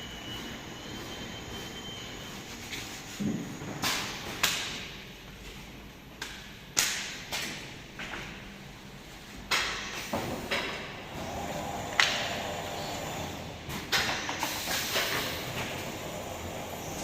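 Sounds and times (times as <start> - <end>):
machine hiss and rattle: 9.8 - 17.0.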